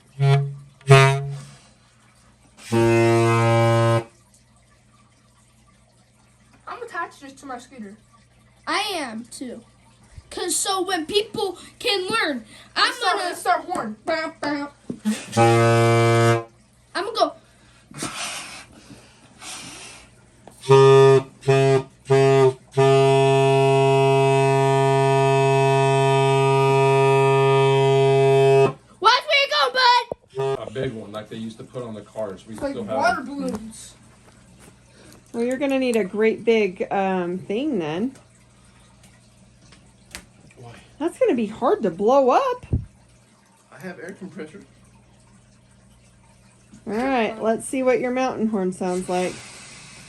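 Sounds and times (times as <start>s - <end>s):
air horn low honk: 0.0s - 1.6s, 2.6s - 4.2s, 15.1s - 16.6s, 20.6s - 28.8s, 30.3s - 30.8s.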